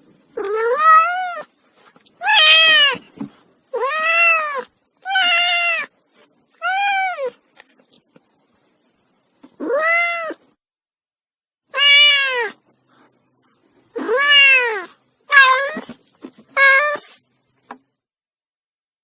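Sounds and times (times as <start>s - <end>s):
kitten meowing: 11.7s - 12.6s, 14.0s - 15.9s.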